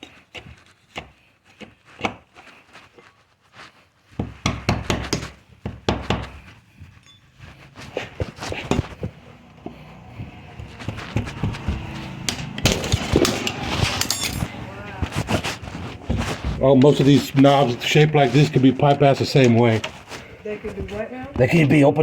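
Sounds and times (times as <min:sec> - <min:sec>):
lock tools clicking and knocking: 0:12.2 - 0:14.5.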